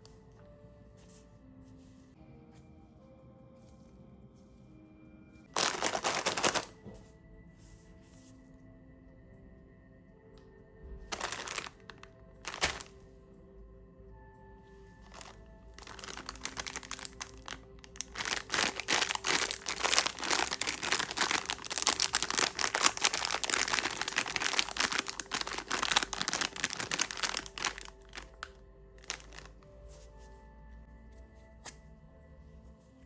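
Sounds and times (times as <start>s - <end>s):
plastic wrapper crinkling: 5.5s - 6.8s, 11.1s - 13.0s, 15.0s - 29.6s.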